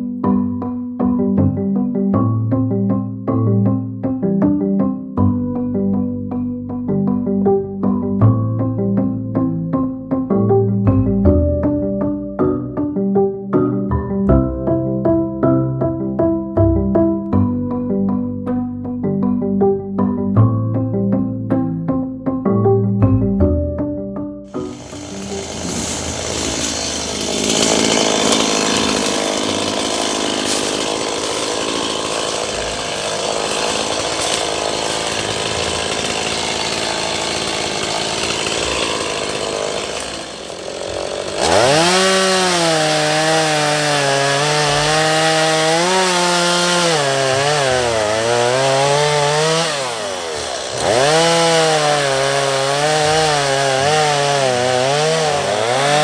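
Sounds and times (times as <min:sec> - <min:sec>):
chainsaw engine revving: 0:24.5 - 0:56.0.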